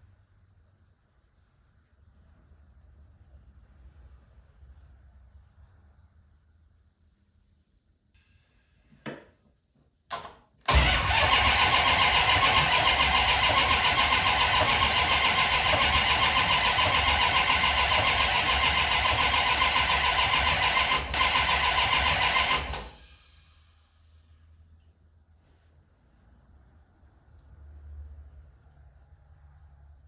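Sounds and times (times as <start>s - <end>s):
engine cranking on starter: 10.7s - 23.0s.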